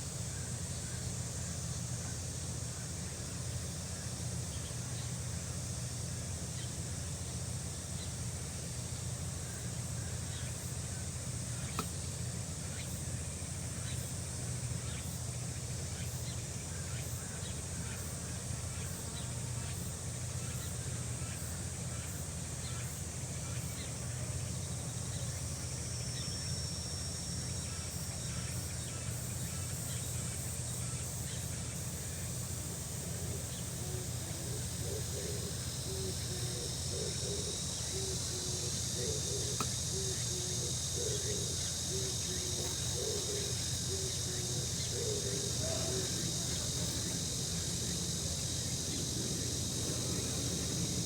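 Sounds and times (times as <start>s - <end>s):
high insect drone: 0.0s - 51.0s
low steady rumble: 32.0s - 51.0s.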